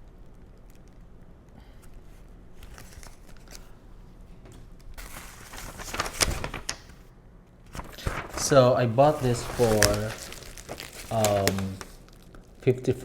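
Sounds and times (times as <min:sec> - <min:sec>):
packaging rustling and clicks: 0:04.9 - 0:07.0, 0:07.7 - 0:12.6
packaging crinkling: 0:05.0 - 0:07.0, 0:07.7 - 0:12.7.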